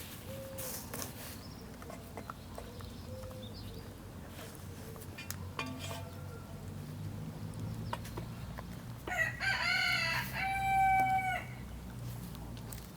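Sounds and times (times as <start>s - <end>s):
rooster crowing: 9.1s - 11.6s.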